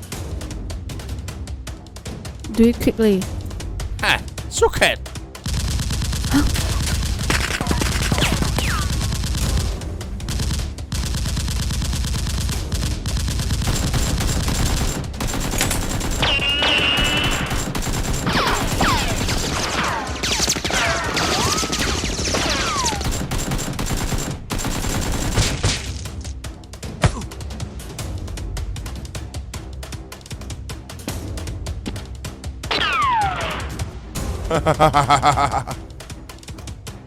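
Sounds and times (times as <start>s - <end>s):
background music: 0.0s - 37.0s
rapid gunfire: 5.4s - 26.3s.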